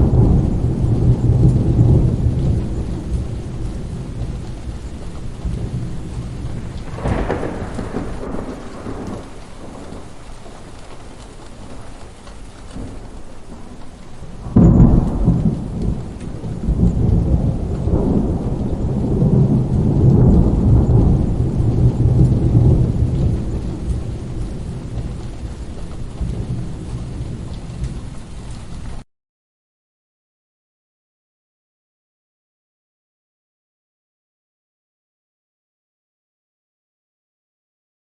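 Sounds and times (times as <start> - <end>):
steady rain: 0.0 - 29.0
thunderclap with rolling rumble: 0.0 - 29.0.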